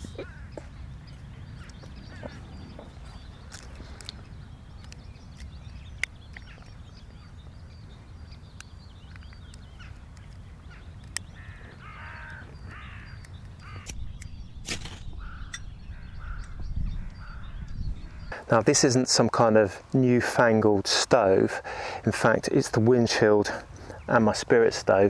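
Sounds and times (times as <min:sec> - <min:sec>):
crow-like calls: 0:00.0 - 0:00.8, 0:01.6 - 0:03.0, 0:09.8 - 0:18.4
birds calling: 0:00.0 - 0:18.9.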